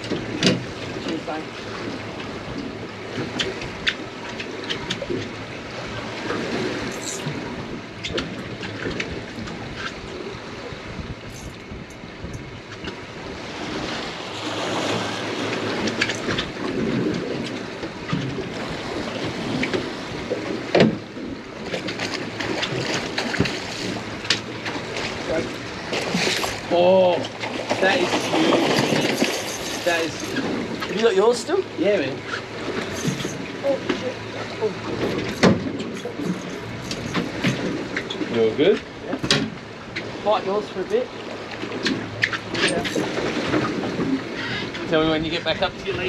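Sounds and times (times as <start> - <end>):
water lapping against boat hull: 0.0 - 46.0
wind on microphone: 6.2 - 21.4.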